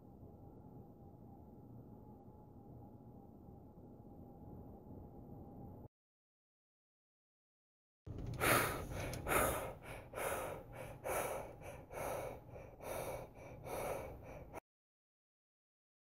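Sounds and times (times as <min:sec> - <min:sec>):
person gasping for breath: 0:08.2 - 0:14.6.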